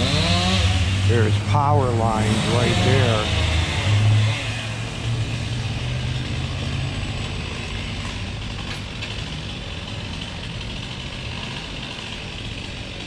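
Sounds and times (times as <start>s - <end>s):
heavy engine idling: 0.8s - 13.0s.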